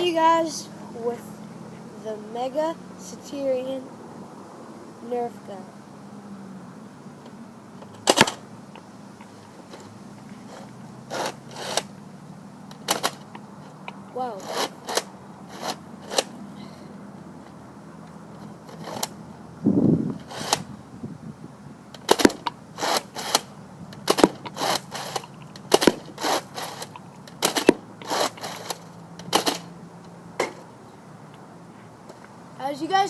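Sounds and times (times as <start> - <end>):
toy blaster plastic clacks: 12.7 - 13.3, 22.0 - 29.7
dull thump: 30.4 - 30.6.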